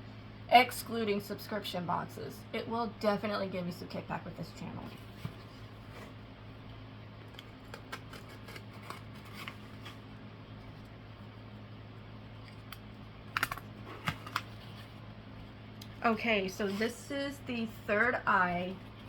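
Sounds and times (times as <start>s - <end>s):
steady low hum: 0.0s - 19.0s
cardboard box packaging handled: 7.7s - 10.0s.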